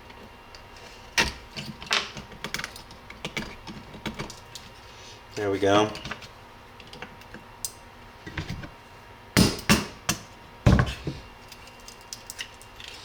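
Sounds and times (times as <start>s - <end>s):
hammer striking chisel: 9.4s - 10.2s.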